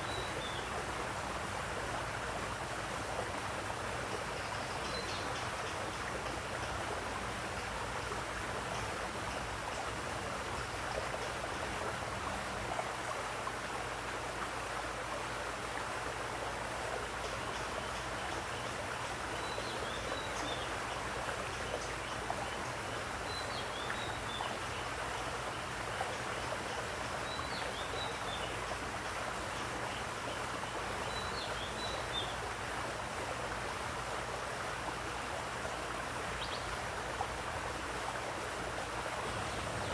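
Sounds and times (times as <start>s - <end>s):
flowing water: 0.0s - 39.9s.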